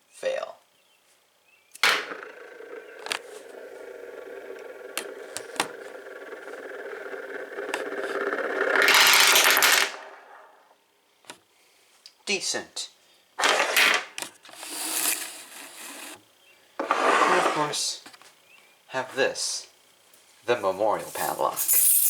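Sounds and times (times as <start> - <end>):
padlock spinning and rattling: 2.0 - 10.2, 21.2 - 22.0.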